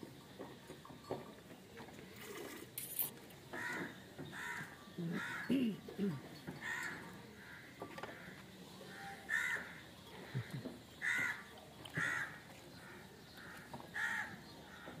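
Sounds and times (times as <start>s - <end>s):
birds calling: 3.4s - 15.0s.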